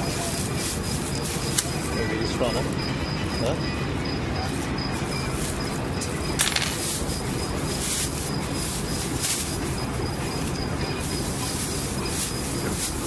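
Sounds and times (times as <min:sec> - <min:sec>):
low machinery hum: 0:00.0 - 0:13.0
food containers clattering: 0:04.9 - 0:13.0
sharp clink: 0:06.4 - 0:07.0.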